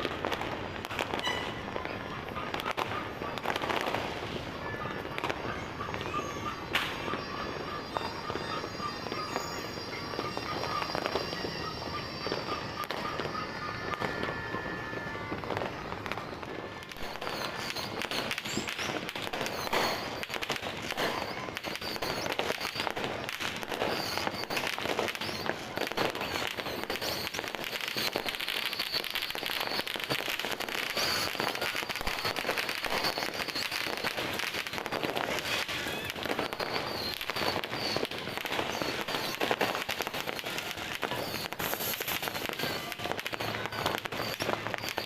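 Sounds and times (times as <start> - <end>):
fireworks and firecrackers banging: 0.0 - 45.0.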